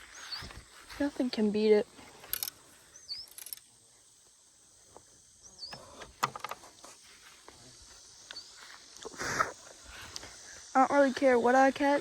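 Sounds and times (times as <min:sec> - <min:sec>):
outdoor background noise: 0:00.0 - 0:12.0
sharp clicks and knocks: 0:06.0 - 0:06.8.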